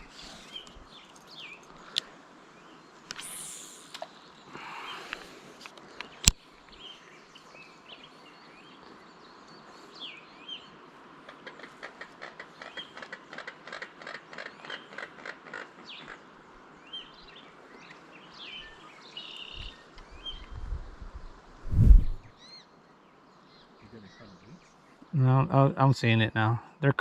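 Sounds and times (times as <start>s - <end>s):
small birds chirping: 0.0s - 11.8s, 16.8s - 25.2s.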